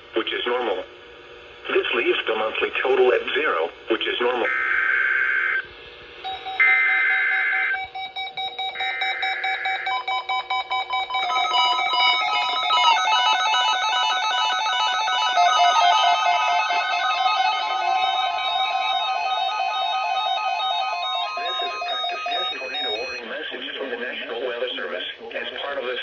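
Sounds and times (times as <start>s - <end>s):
alternating alarm tones: 4.2s - 23.4s
steady alert tones: 6.2s - 23.2s
screechy data bursts: 6.3s - 23.3s.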